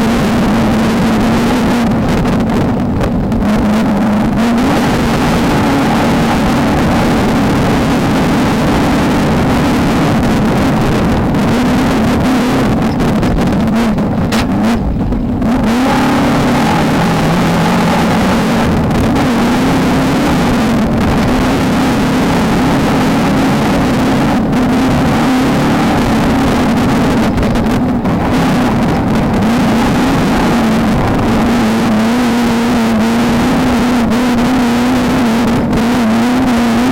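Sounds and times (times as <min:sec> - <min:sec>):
race car engine revving hard: 0:00.0 - 0:36.9
wind and rough terrain noise: 0:00.0 - 0:36.9.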